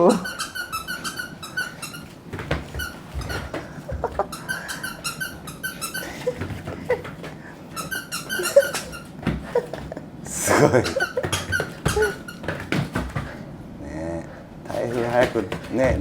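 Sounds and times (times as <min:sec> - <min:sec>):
squeaky dog toys squeaking: 0:00.0 - 0:09.7, 0:10.8 - 0:12.9.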